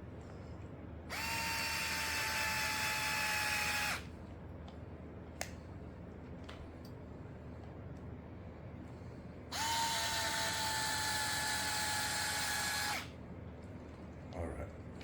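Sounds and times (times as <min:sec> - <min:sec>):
electric screwdriver whining: 0:01.1 - 0:04.1, 0:09.5 - 0:13.1.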